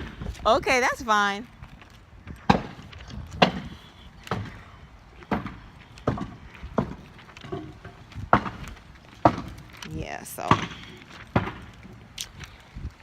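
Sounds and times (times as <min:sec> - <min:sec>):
sharp knocks on wood: 0:08.3 - 0:08.6, 0:09.2 - 0:09.6.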